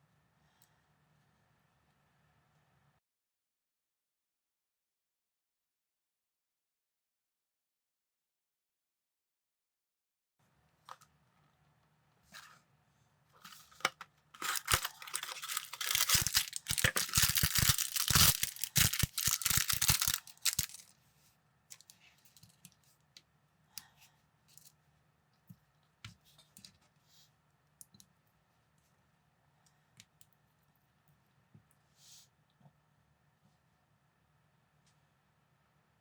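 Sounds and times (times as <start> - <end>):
plastic bag crinkling: 14.4 - 20.9, 21.7 - 22.5
plastic bricks clicking: 14.4 - 20.9.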